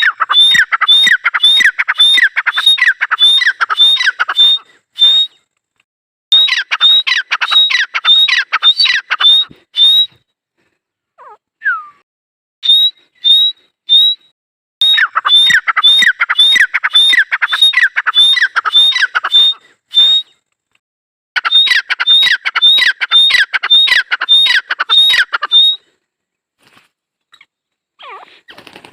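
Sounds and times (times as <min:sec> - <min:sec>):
francolin calling: 0:00.0 - 0:05.3, 0:06.3 - 0:10.1, 0:14.8 - 0:20.3, 0:21.4 - 0:25.8.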